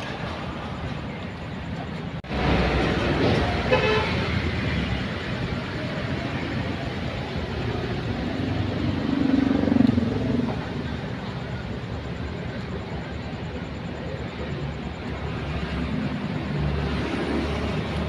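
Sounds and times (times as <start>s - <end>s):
road traffic: 0.0s - 18.0s
vehicle horn: 3.6s - 4.5s.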